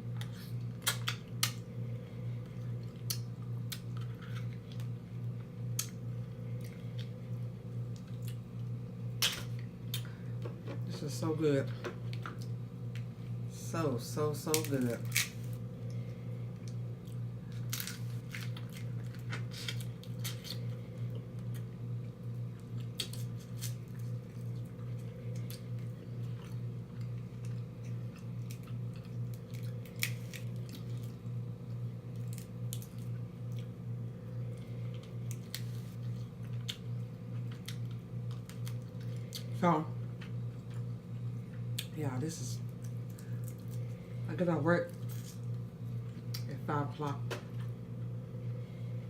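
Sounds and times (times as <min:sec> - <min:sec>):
steady low hum: 0:00.0 - 0:49.0
chewing and lip smacking: 0:34.9 - 0:39.5.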